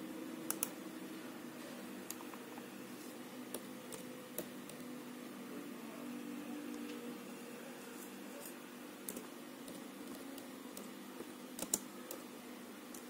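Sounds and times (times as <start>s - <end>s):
low electrical hum: 0.0s - 13.0s
computer mouse clicks: 0.5s - 0.8s, 9.1s - 12.3s.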